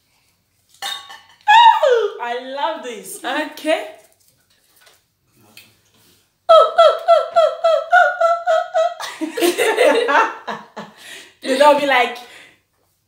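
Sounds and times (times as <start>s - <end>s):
woman imitating animal call: 1.5s - 2.2s, 6.5s - 9.0s
woman laughing: 6.5s - 11.0s.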